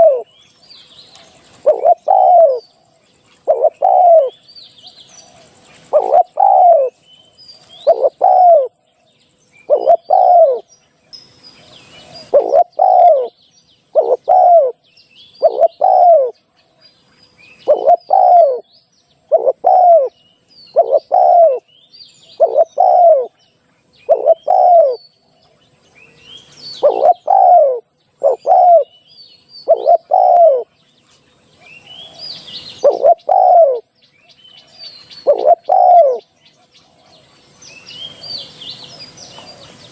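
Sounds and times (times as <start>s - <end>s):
dove cooing: 0.0s - 0.4s, 1.5s - 2.8s, 3.4s - 4.4s, 5.2s - 7.0s, 7.7s - 8.8s, 9.6s - 10.7s, 11.7s - 14.8s, 15.4s - 16.4s, 17.6s - 21.7s, 22.3s - 23.4s, 24.0s - 25.0s, 26.7s - 28.9s, 29.6s - 30.7s, 31.6s - 33.9s, 35.1s - 37.2s
small birds chirping: 0.0s - 39.9s.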